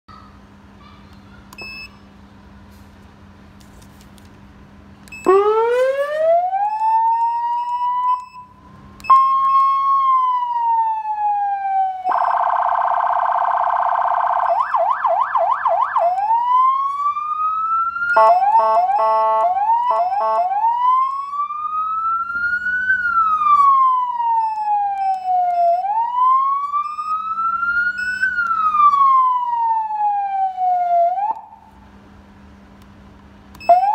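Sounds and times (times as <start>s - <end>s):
electronic siren tones: 5.2s - 29.2s, 33.6s - 33.9s.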